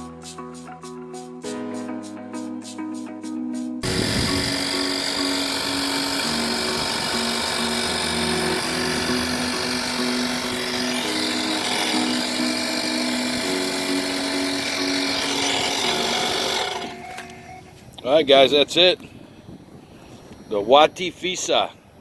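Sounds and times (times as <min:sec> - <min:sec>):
background music: 0:00.0 - 0:17.9
tire inflator compressor running: 0:03.8 - 0:17.7.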